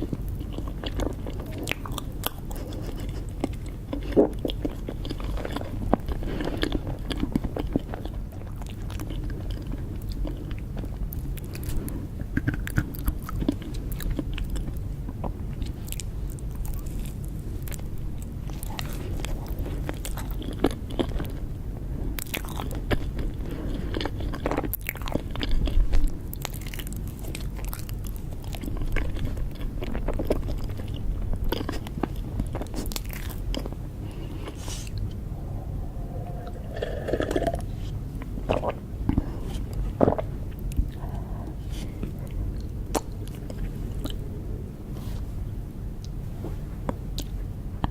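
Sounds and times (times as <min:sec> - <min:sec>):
person chewing cake: 0:00.0 - 0:46.2
low hum: 0:29.8 - 0:47.0.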